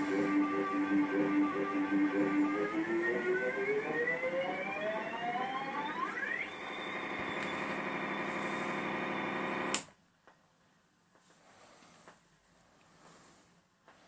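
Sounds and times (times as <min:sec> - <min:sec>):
high-pitched synthesizer drone: 0:00.0 - 0:09.7
synthesizer tone gliding upward: 0:00.0 - 0:09.7
click: 0:09.7 - 0:10.4.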